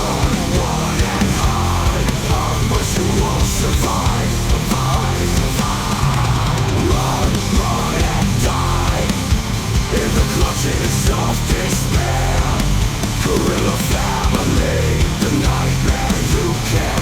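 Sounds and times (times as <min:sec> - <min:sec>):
distorted electric guitars: 0:00.0 - 0:17.0
drum kit: 0:00.0 - 0:17.0.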